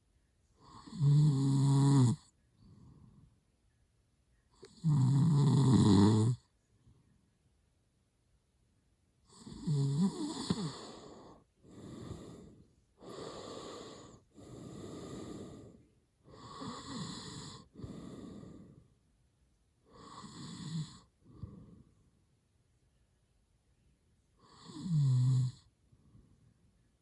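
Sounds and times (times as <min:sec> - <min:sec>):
man snoring: 0:00.6 - 0:02.2, 0:04.7 - 0:06.4, 0:09.3 - 0:18.7, 0:19.9 - 0:21.1, 0:24.4 - 0:25.6.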